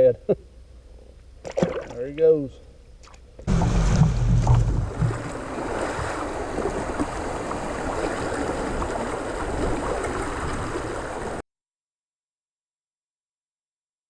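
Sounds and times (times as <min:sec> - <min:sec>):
river water rippling: 0:01.2 - 0:11.4.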